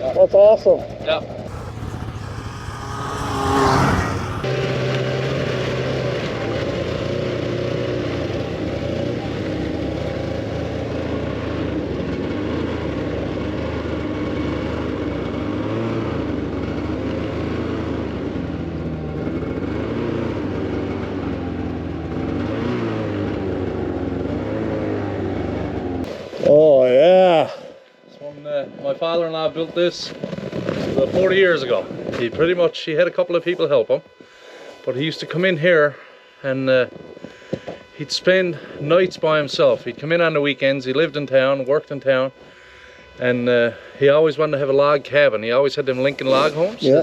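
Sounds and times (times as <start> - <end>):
snowmobile engine running: 1.5 - 4.6.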